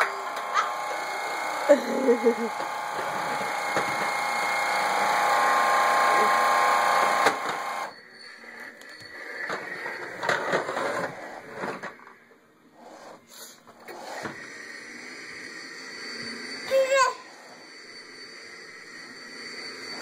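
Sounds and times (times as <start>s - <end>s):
vacuum cleaner scraping and bumping: 0.0s - 7.9s, 9.4s - 12.1s.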